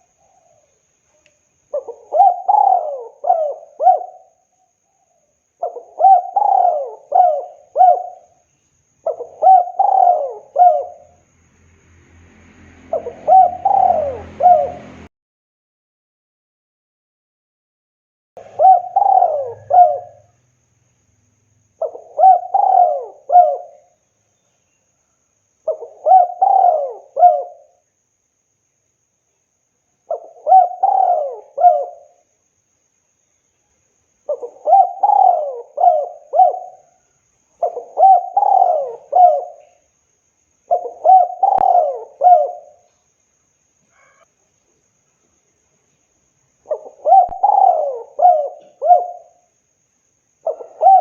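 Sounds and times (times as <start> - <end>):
dove cooing: 1.7 - 4.4, 5.6 - 8.4, 9.0 - 11.2, 12.9 - 15.1, 18.4 - 20.4, 21.8 - 24.0, 25.7 - 27.8, 30.1 - 32.2, 34.3 - 37.0, 37.6 - 39.8, 40.7 - 42.9, 46.7 - 49.5, 50.4 - 51.0.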